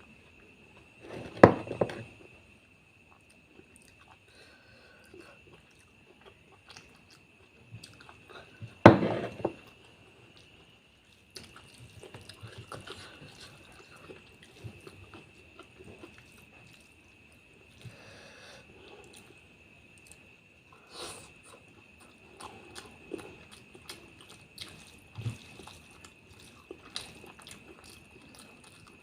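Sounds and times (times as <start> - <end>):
person chewing food: 3.1 - 4.3, 5.0 - 18.0, 21.4 - 29.0.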